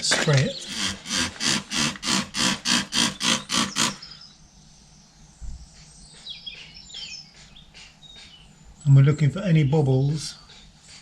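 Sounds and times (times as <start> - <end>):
trigger sprayer hissing: 0.0 - 4.2.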